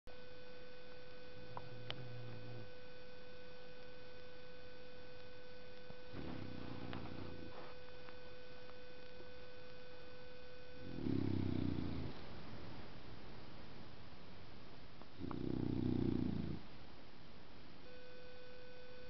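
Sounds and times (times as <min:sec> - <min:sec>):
faint electrical hum: 0:00.1 - 0:19.0
dog snoring: 0:01.4 - 0:02.8, 0:06.1 - 0:07.8, 0:10.8 - 0:12.3, 0:15.2 - 0:16.6.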